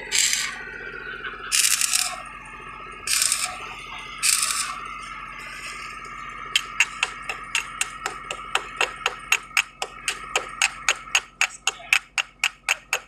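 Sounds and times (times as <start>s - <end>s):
hammer tapping on metal: 6.6s - 13.0s.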